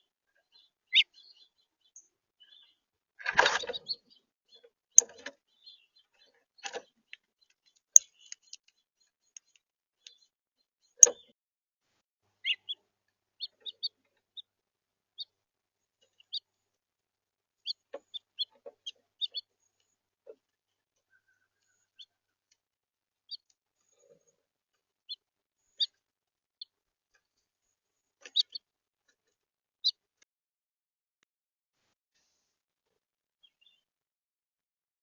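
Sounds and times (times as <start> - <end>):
brief rustle: 3.2 - 3.8.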